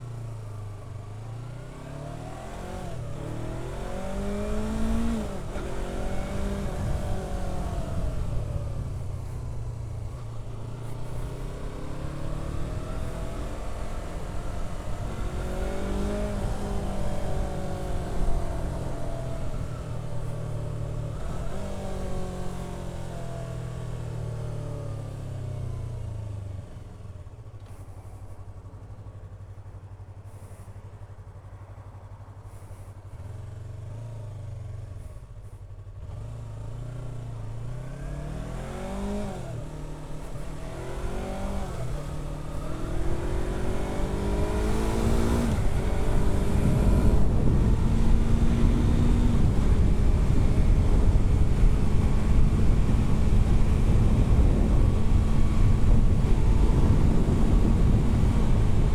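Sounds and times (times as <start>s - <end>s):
motorcycle engine revving: 1.6s - 58.9s
wind rush on microphone: 40.8s - 58.9s.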